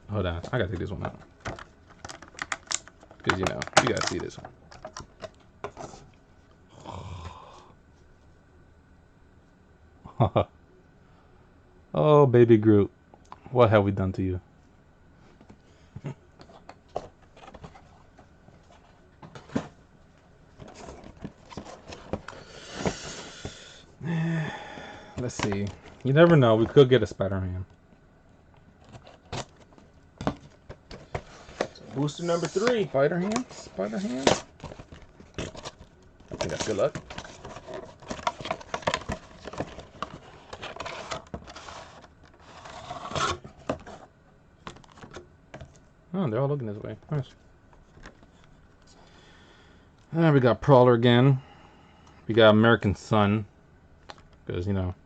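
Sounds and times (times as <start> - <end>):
packaging rustling and crinkling: 28.8 - 44.1.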